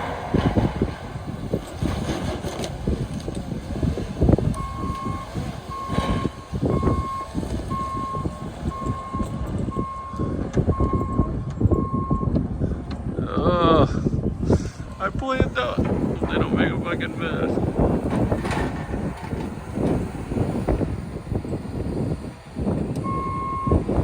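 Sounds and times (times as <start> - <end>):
machine rumbling: 0.0 - 24.0
backup alarm beeping: 4.5 - 12.4, 23.0 - 23.9.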